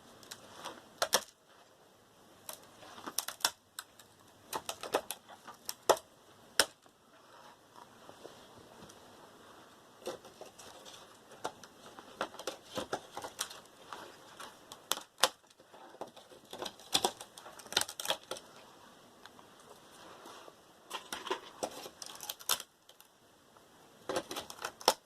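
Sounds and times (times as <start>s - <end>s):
hand tools clicking and snapping: 1.0s - 1.4s, 14.4s - 18.5s, 20.9s - 23.1s.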